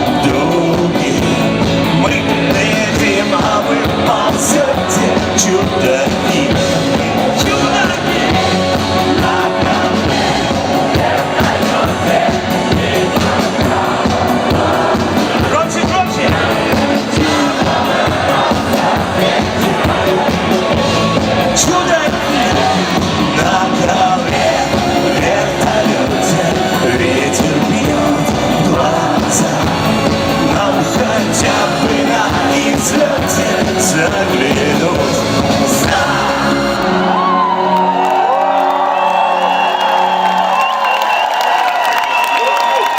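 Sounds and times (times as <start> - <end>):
rock music with driving beat: 0.0 - 37.3.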